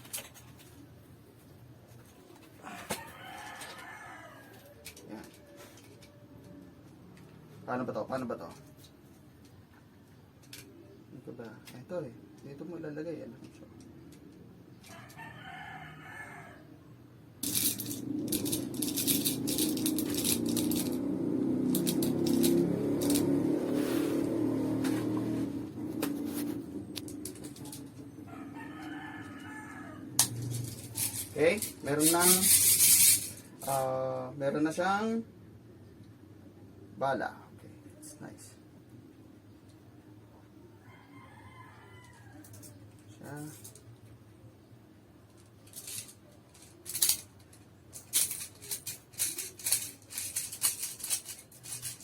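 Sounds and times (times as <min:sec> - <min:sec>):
rooster crowing: 0:02.6 - 0:06.5, 0:14.8 - 0:16.9, 0:27.6 - 0:31.4, 0:40.7 - 0:42.8.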